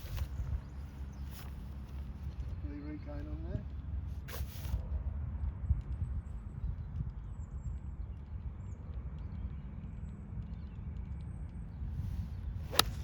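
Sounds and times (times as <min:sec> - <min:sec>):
wind buffeting microphone: 0:11.7 - 0:13.0.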